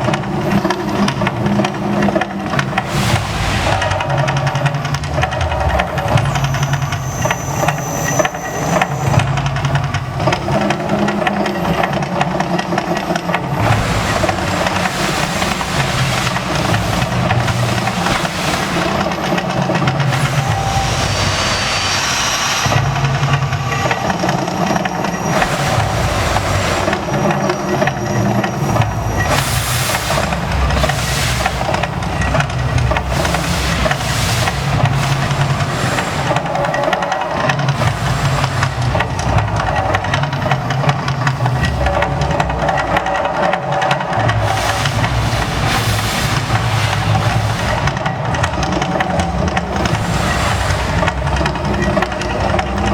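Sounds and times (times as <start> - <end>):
hissing rushes: 2.2 - 6.5, 12.8 - 40.8, 43.9 - 52.9
deep rumble: 2.2 - 6.8, 12.8 - 41.0, 44.1 - 52.9.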